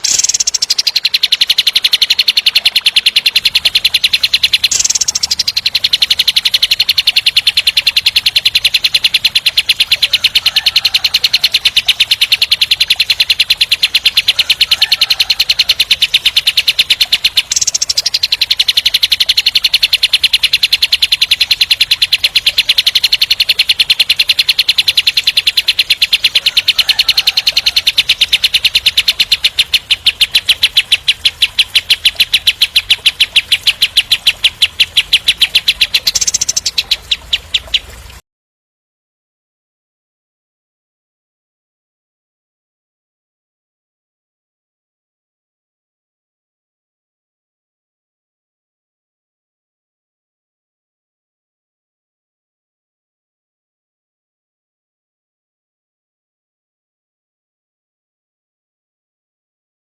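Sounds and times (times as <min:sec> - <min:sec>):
bird rattling trill: 0:00.0 - 0:38.2.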